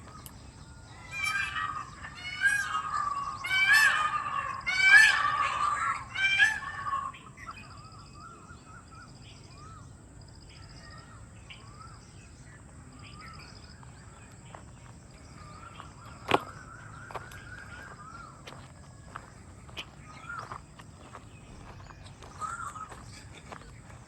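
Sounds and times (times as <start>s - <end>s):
soft bird chirps: 0.0s - 24.0s
high bird trill: 0.1s - 8.7s, 15.2s - 24.0s
loud harsh bird call: 0.3s - 8.7s, 15.2s - 23.7s.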